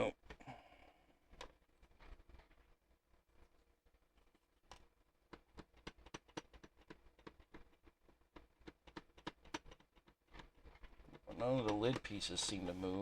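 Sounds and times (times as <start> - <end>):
clicks and taps of puzzle box: 1.3 - 2.7, 4.2 - 12.7.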